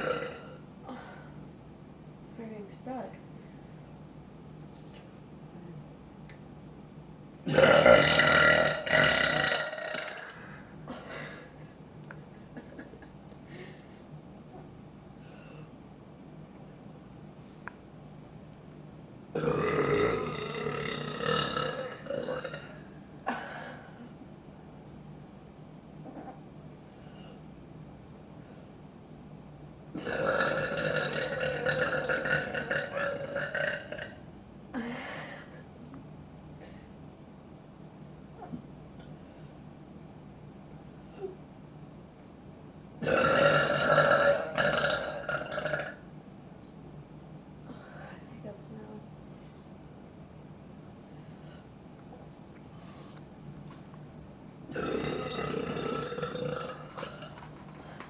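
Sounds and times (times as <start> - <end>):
woman burping: 0.0 - 1.3, 7.5 - 11.5, 19.4 - 24.0, 30.0 - 35.2, 43.0 - 46.0, 54.7 - 57.4.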